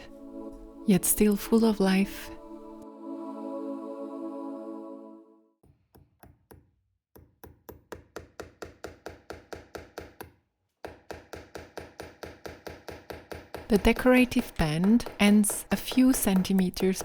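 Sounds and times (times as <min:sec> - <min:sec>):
soft ambient music: 0:00.0 - 0:05.4
hammer tapping upholstery nails: 0:05.6 - 0:17.0.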